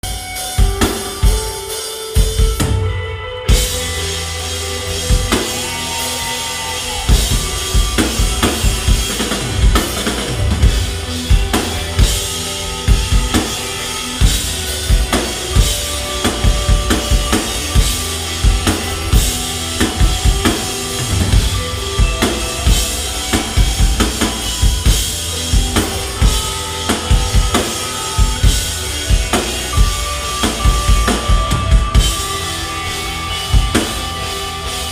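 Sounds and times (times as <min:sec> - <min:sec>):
indie rock band playing live: 0:00.0 - 0:34.9.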